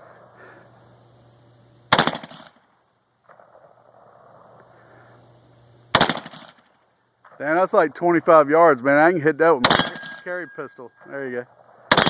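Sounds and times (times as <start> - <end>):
rifle shot with echo: 1.9 - 2.6, 5.9 - 7.6, 9.6 - 10.4, 11.6 - 12.0.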